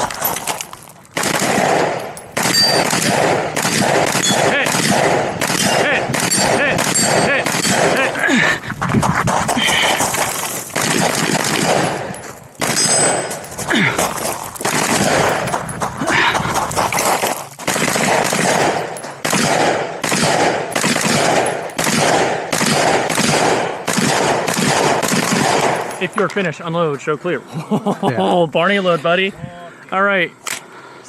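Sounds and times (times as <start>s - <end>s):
rifle shots: 1.1s - 8.2s, 10.7s - 13.4s, 14.6s - 15.6s, 17.0s - 26.1s.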